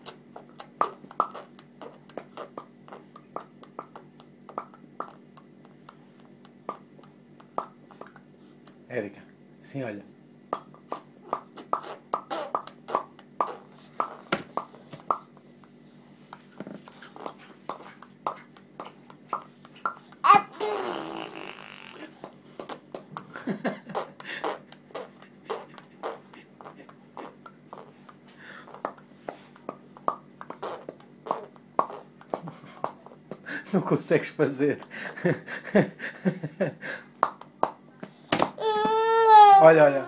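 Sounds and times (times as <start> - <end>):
mouth popping: 0.0 - 5.8, 10.5 - 15.3.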